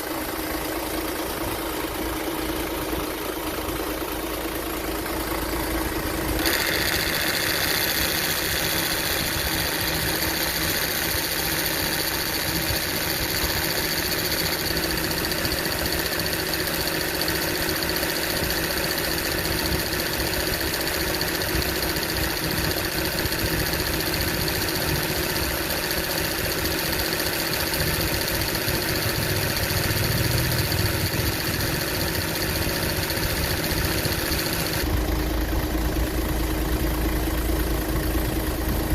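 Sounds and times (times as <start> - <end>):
compressor whining: 0.0 - 38.9
diesel engine idling: 0.0 - 38.9.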